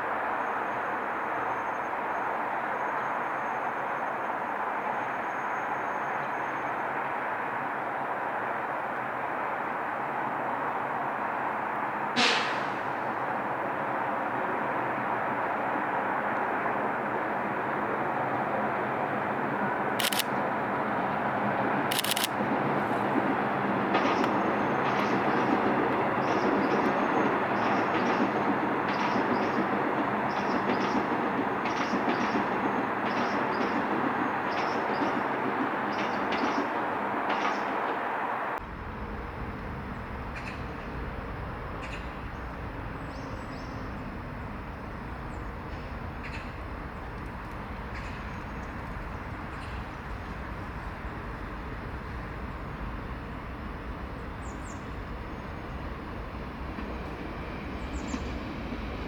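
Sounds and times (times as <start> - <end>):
electric train rolling on track: 0.0 - 59.0
short clicks: 20.0 - 20.3, 21.9 - 22.4.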